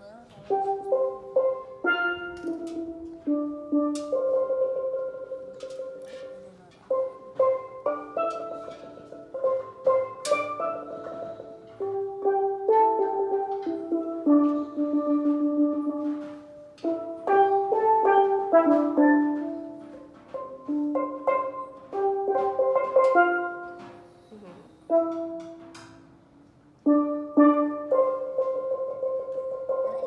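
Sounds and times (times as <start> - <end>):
steel pan melody: 0.4 - 30.0.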